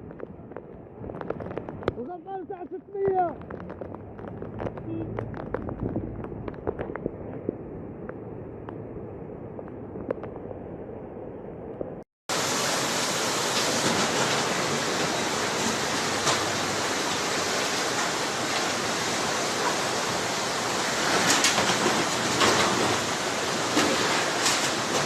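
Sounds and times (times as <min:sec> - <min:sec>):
rushing floodwater: 0:12.3 - 0:25.0.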